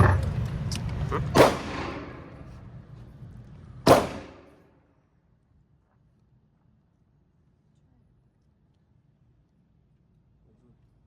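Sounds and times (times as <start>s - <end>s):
gunshots with echo: 1.3s - 2.4s, 3.9s - 4.6s.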